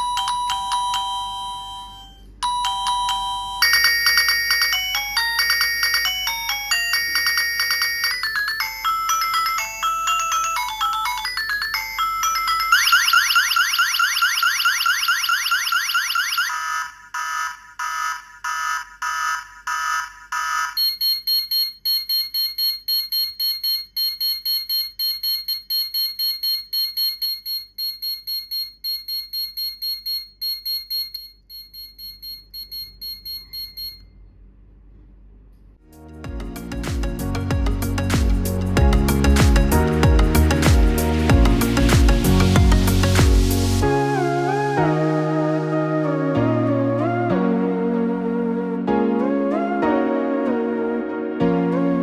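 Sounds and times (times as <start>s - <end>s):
electronic chime melody: 0.0s - 16.6s
electronic alarm beeps: 0.0s - 34.1s
rising siren sweeps: 43.7s - 51.0s.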